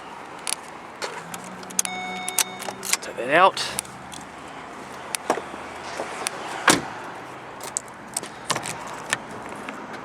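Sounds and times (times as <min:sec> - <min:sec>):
car keys jangling: 0:00.3 - 0:05.3, 0:07.6 - 0:09.4.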